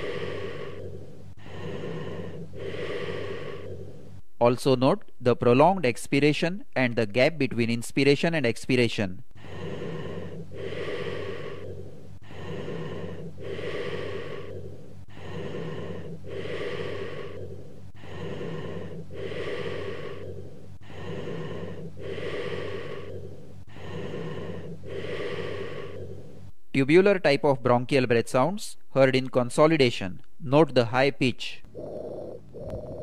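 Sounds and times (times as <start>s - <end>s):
low-pitched breath sounds: 0.0s - 4.2s, 9.4s - 26.6s, 31.7s - 33.0s.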